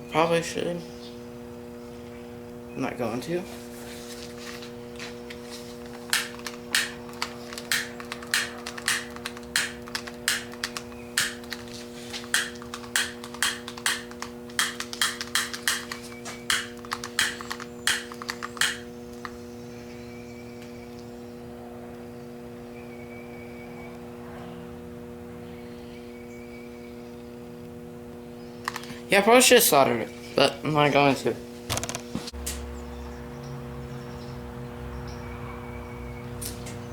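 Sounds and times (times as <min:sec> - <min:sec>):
steady electrical hum: 0:00.0 - 0:36.9
sharp clicks: 0:05.9 - 0:19.4, 0:28.6 - 0:29.0.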